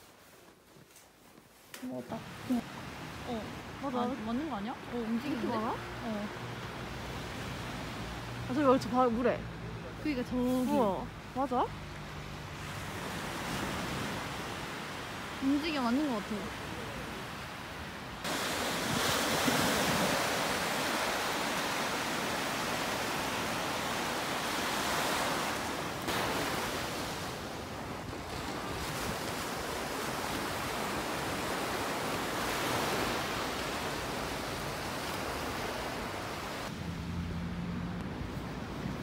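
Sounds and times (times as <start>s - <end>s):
waves breaking on shore: 1.5s - 39.0s.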